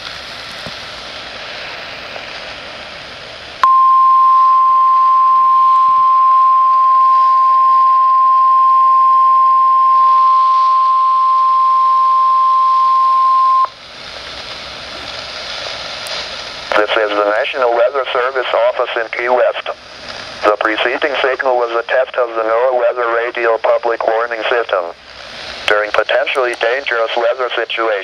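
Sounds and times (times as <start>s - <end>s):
radio hiss: 0.0s - 28.0s
steady alarm tone: 3.6s - 13.7s.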